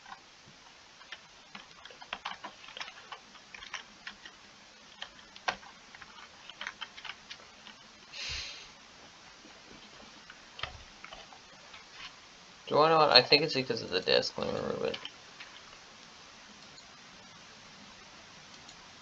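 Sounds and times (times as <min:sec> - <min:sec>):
keyboard keys clicking: 0:01.0 - 0:07.8, 0:14.5 - 0:15.7
breathy rush of noise: 0:08.1 - 0:08.9.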